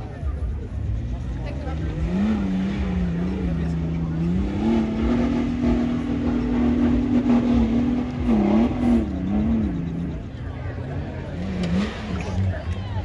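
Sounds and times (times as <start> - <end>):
engine revving hard: 0.9 - 13.0.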